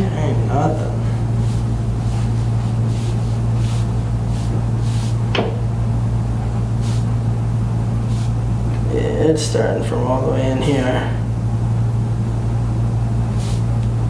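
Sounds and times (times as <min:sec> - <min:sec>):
low hum: 0:00.0 - 0:14.0
soft rustles: 0:01.4 - 0:05.2.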